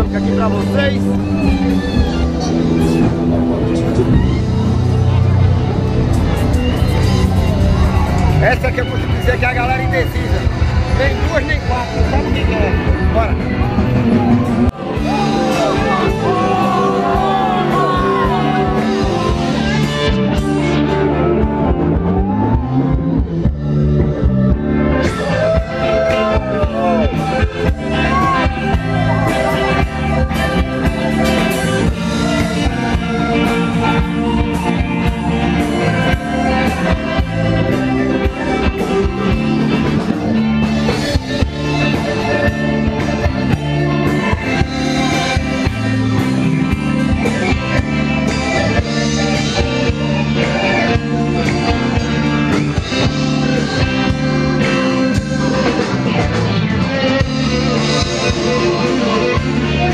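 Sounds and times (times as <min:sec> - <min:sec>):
rock music: 0:00.0 - 0:59.9.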